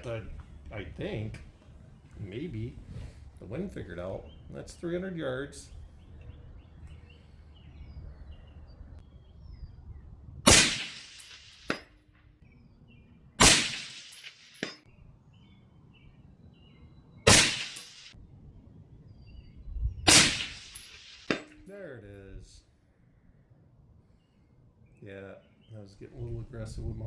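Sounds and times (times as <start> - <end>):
suppressed rifle shots: 10.5 - 11.8, 13.4 - 14.8, 17.3 - 18.2, 20.1 - 21.6.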